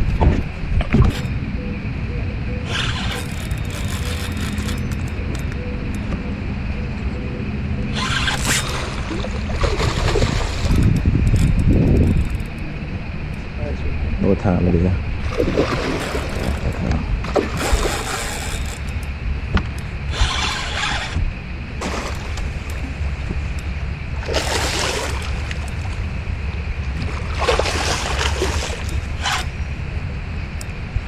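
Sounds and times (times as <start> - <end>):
wind rumble on microphone: 0.0 - 31.0
fish splashing water: 8.0 - 11.0, 15.2 - 18.8, 21.8 - 23.0, 24.2 - 26.0, 26.9 - 29.6.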